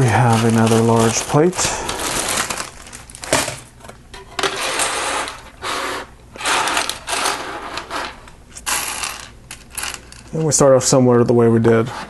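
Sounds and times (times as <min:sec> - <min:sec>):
plastic toy pieces handled: 0:00.0 - 0:03.6, 0:06.5 - 0:10.4.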